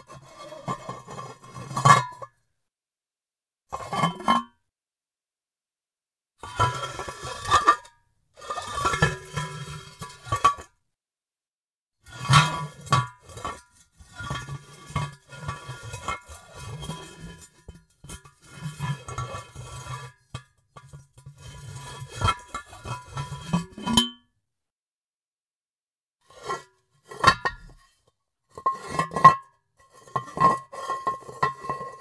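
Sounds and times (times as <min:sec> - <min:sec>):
ceramic jar scraping on surface: 0:00.0 - 0:02.4, 0:03.7 - 0:04.6, 0:06.4 - 0:10.7, 0:12.1 - 0:24.3, 0:26.2 - 0:32.0.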